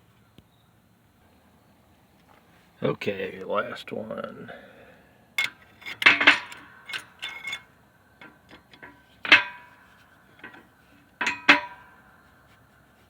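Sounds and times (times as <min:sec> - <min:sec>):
metal parts clanking on hub: 0:05.4 - 0:12.0.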